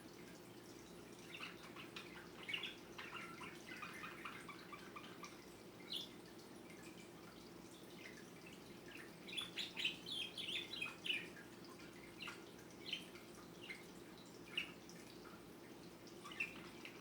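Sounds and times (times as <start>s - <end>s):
faint steady hum: 0.0s - 17.0s
small bird chirping: 1.2s - 6.2s, 8.9s - 11.4s, 12.1s - 13.9s, 16.2s - 17.0s.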